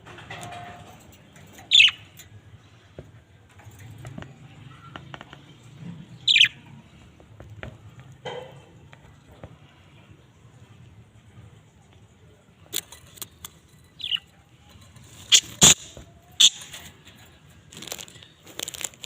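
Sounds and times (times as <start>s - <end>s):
budgerigar sharp calls: 6.3s - 6.5s, 15.3s - 16.6s.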